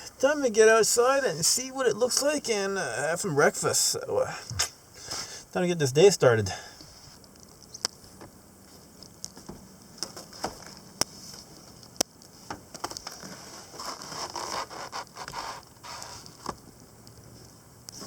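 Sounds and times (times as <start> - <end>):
rustling: 6.8 - 18.0.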